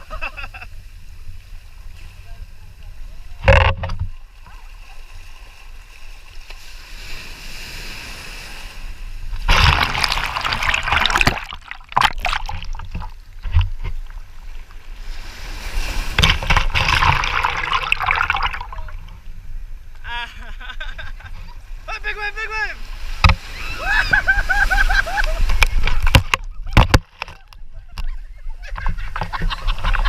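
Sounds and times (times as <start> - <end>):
water sloshing around kayak: 9.1 - 19.3.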